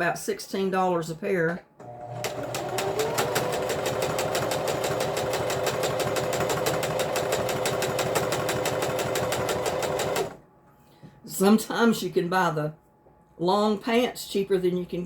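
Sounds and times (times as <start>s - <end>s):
sewing machine stitching: 1.8s - 10.4s.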